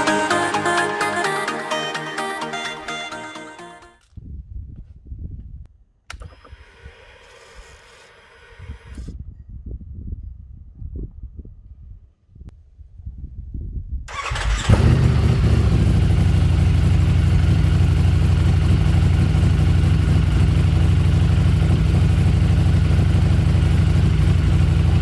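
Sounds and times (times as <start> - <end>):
motorcycle engine cranking: 14.1 - 15.8
motorcycle engine idling loudly: 14.4 - 25.0.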